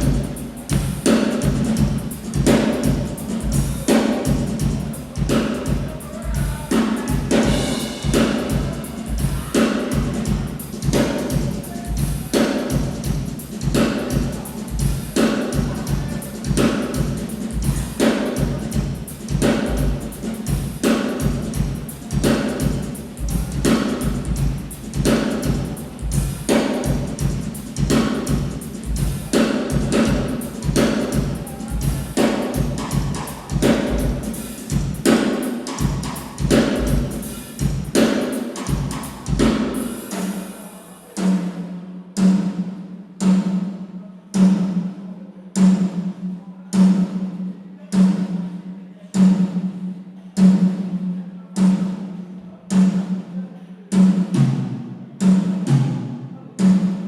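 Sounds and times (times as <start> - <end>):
bass drum pulse: 0.0 - 20.0
drum kit groove: 0.0 - 43.8, 53.9 - 57.0.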